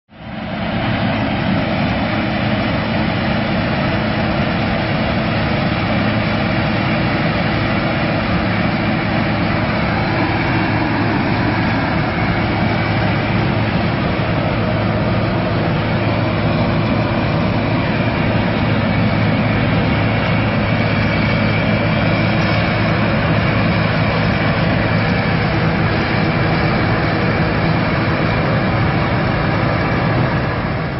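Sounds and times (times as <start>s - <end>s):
combine harvester running: 0.1s - 30.9s.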